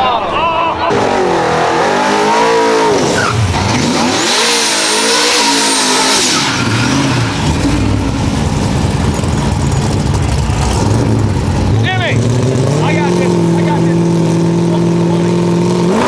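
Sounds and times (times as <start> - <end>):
race car engine revving: 0.8 - 16.0.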